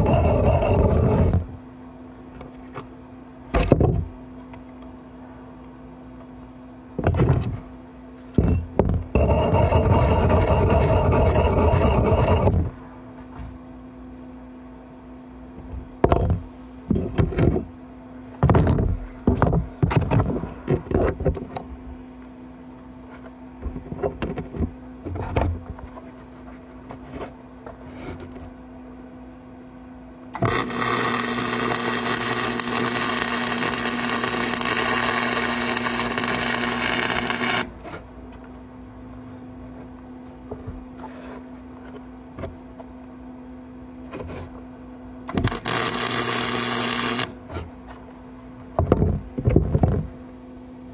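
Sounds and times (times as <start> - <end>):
metal clanks and scrapes: 0.0 - 1.5, 7.0 - 12.8
steady electrical hum: 0.0 - 50.9
welding arc crackle and hiss: 30.4 - 37.9, 45.4 - 47.4.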